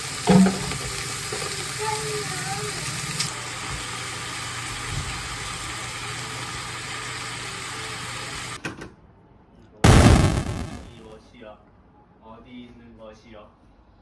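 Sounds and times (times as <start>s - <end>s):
range hood fan humming: 0.0s - 8.6s.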